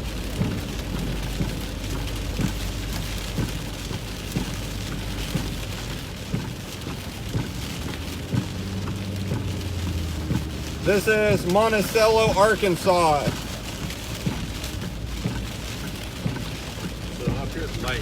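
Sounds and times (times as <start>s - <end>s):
heavy rain on truck: 0.0s - 18.0s
tires and engine drone: 0.0s - 18.0s.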